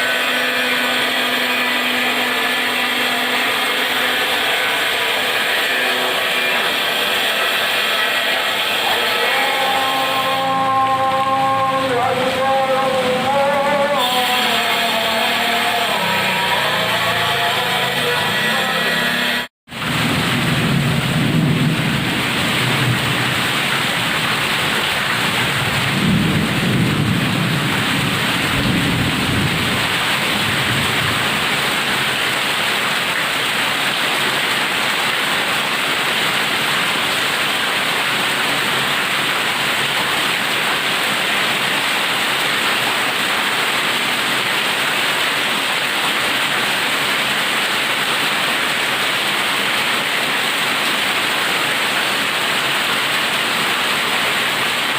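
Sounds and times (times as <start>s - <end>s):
heavy rain: 0.0s - 54.9s
thunder rumbling: 19.8s - 24.2s, 24.8s - 31.5s.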